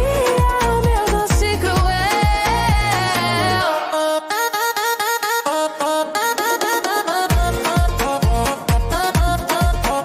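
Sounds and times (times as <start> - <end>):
deep kick drum and bass: 0.0 - 3.6, 7.3 - 10.0
instrumental dance music: 0.0 - 10.0.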